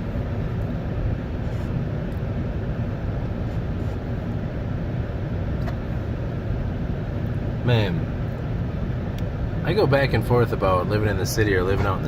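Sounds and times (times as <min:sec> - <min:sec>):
engine and road noise in cabin: 0:00.0 - 0:12.0.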